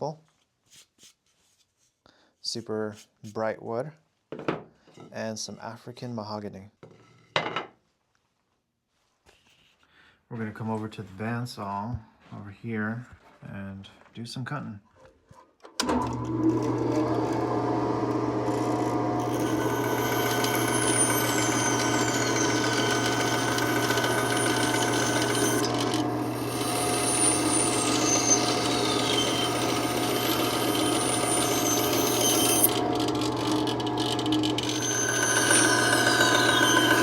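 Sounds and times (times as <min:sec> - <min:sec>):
bandsaw cutting wood: 0:15.8 - 0:37.0.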